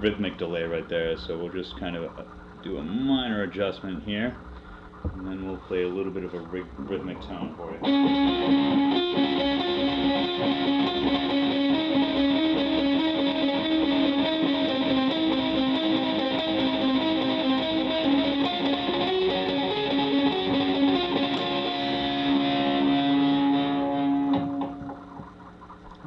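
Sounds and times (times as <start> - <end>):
electric guitar with delay: 6.8 - 26.0.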